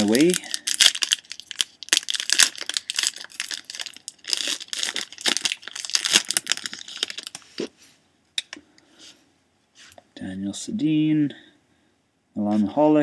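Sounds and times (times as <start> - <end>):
wrapper tearing and crinkling: 0.0 - 7.7.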